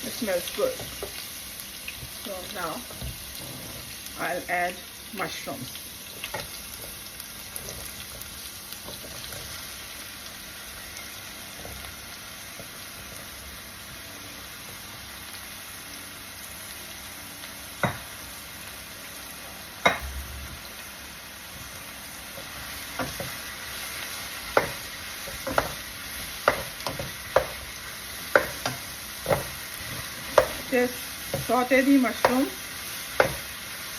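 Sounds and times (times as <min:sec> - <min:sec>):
mushrooms sizzling in oil: 0:00.0 - 0:33.9
spatula knocking against pan: 0:26.4 - 0:30.7, 0:33.1 - 0:33.5.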